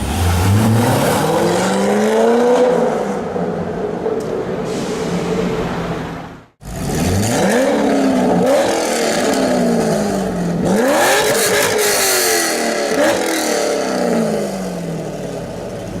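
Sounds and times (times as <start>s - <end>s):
car engine revving: 0.0s - 3.7s, 6.6s - 15.8s.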